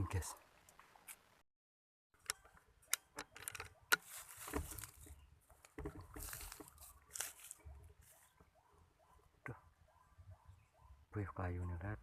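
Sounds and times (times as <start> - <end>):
close rustling and crunching: 3.3 - 8.5.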